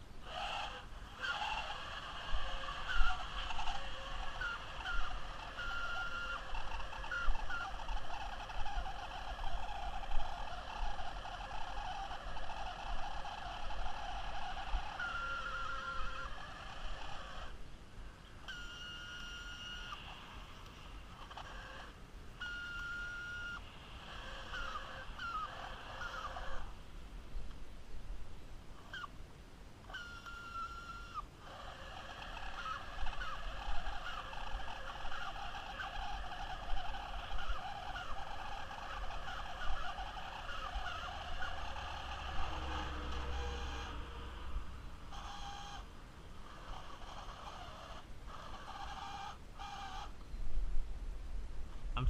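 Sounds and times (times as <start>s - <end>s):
rough wavering gear noise: 0.0s - 17.6s, 30.0s - 50.2s
toy car electric motor whining: 0.0s - 17.6s, 18.4s - 26.8s, 29.9s - 50.2s.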